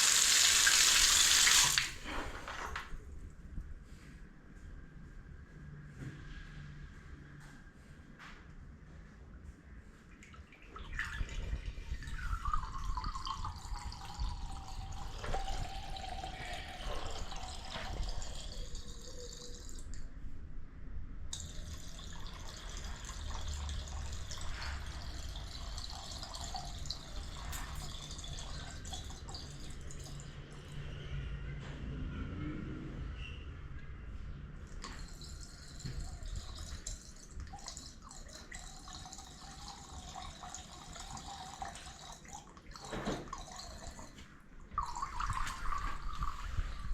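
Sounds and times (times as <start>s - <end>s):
water splashing into a drain: 0.0s - 2.6s, 10.4s - 20.0s, 21.4s - 30.3s, 44.8s - 46.9s.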